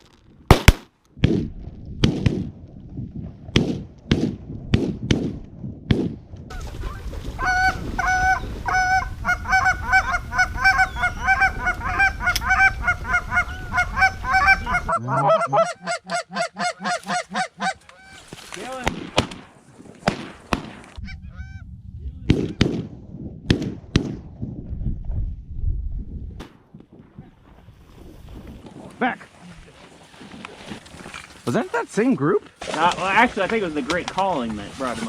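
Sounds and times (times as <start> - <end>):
shotgun blasts: 0.5 - 1.4, 18.8 - 21.0
geese honking: 6.5 - 18.4.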